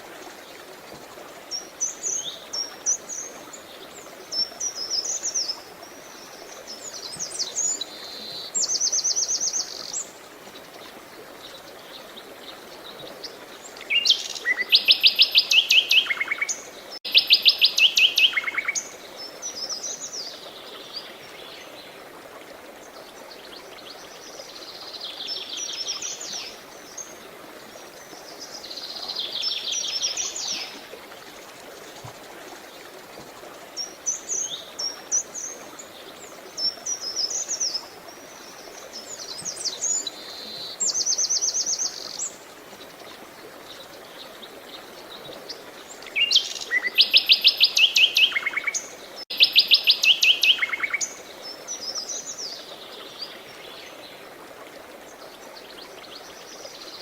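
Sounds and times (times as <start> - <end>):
running water hiss: 0.0 - 57.0
songbirds singing: 33.8 - 54.3.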